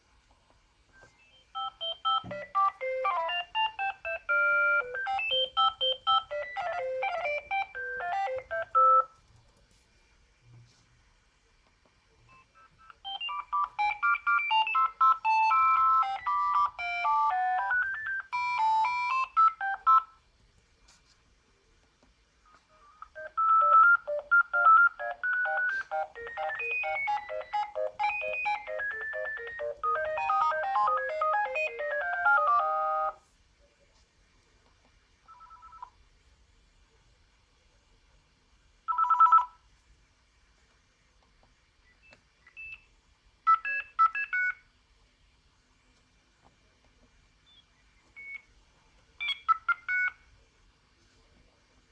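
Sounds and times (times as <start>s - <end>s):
phone beep: 1.0s - 9.1s, 12.3s - 20.1s, 23.1s - 33.2s, 35.3s - 35.9s, 38.9s - 39.6s, 49.2s - 50.2s
phone ringtone melodies: 1.6s - 9.1s, 13.0s - 20.1s, 23.2s - 33.2s.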